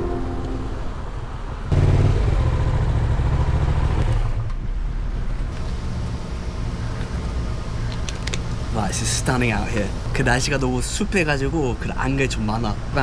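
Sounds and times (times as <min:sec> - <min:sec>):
motorcycle engine rumbling: 0:00.0 - 0:04.2.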